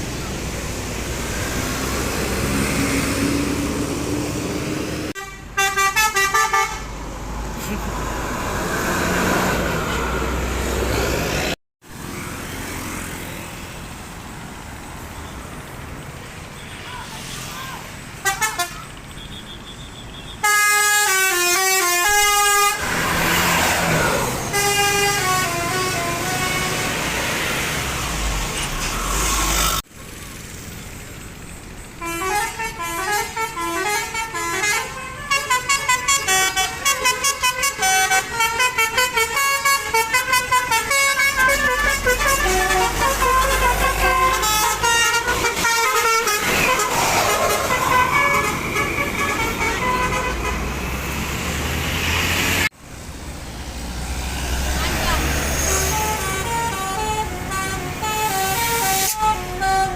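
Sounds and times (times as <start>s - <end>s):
bus musical horns: 2.4s - 7.0s, 18.2s - 27.2s, 32.0s - 51.0s, 54.8s - 59.9s.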